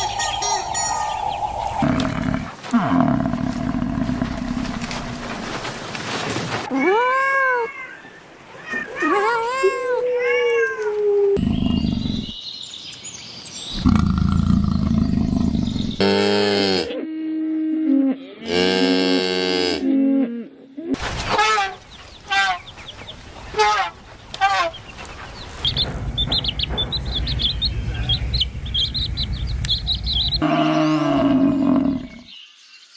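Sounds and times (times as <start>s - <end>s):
low rough animal call: 1.6s - 5.7s, 11.4s - 12.4s, 30.3s - 32.3s
arching animal calls: 1.6s - 5.8s, 21.0s - 32.2s
deeper pitched animal calls: 23.5s - 32.3s.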